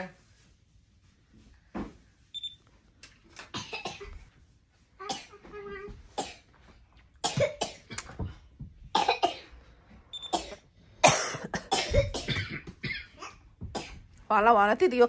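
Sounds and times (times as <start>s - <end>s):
boy coughing: 3.5s - 4.2s, 5.0s - 5.4s, 6.2s - 6.4s, 7.2s - 8.2s, 8.9s - 9.5s, 10.3s - 14.0s.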